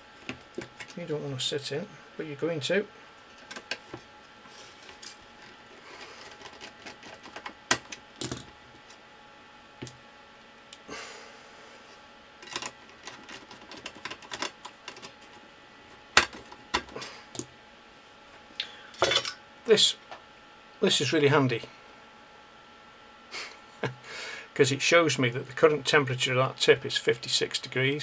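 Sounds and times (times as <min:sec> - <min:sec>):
faint steady hum: 0:00.0 - 0:28.0
tools clicking and tapping on workbench: 0:06.2 - 0:08.5, 0:12.4 - 0:15.4, 0:16.2 - 0:17.5.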